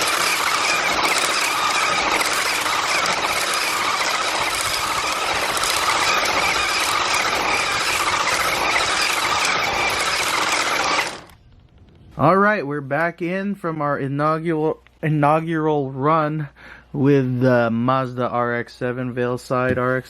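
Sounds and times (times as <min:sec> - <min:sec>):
toy car electric motor whining: 0:00.0 - 0:11.4.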